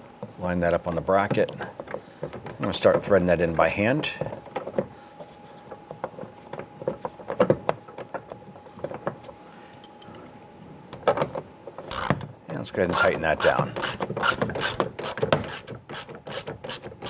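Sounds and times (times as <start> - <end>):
metallic clicks of screwdriver bit: 13.0 - 16.9.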